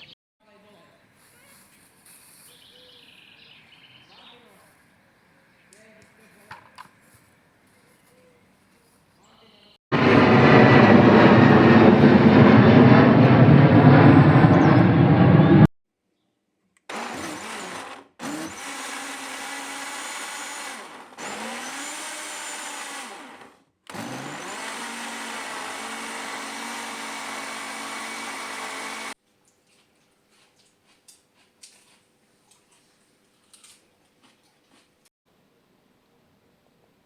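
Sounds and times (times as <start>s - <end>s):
small electric motor spinning up: 16.9s - 29.2s.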